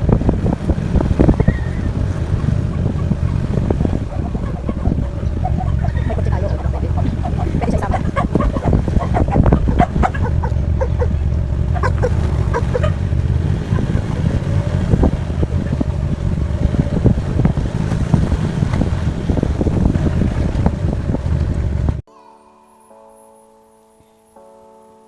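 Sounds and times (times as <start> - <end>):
vehicle engine and road rumble: 0.0 - 22.1.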